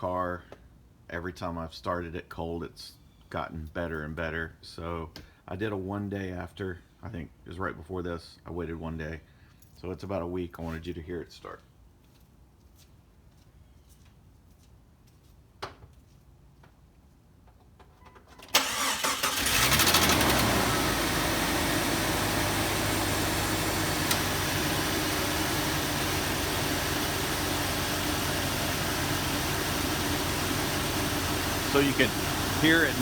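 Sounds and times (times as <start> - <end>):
car engine idling: 18.6 - 33.0.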